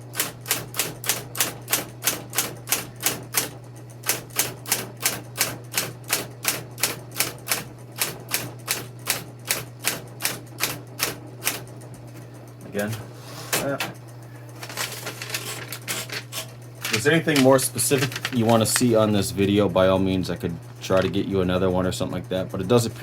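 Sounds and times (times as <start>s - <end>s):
electric typewriter key strikes: 0.0s - 11.8s, 14.6s - 19.0s
typewriter motor hum: 0.0s - 23.0s.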